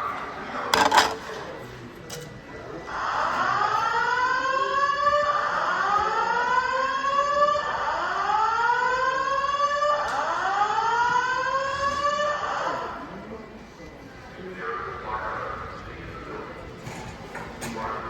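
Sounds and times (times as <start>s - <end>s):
fire alarm evacuation whoop: 2.9s - 12.9s.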